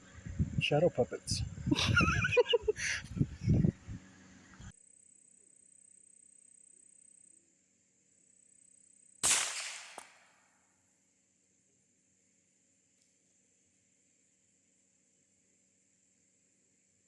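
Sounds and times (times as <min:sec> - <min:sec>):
faint steady hum: 0:00.0 - 0:04.7
rifle shot: 0:09.2 - 0:10.5.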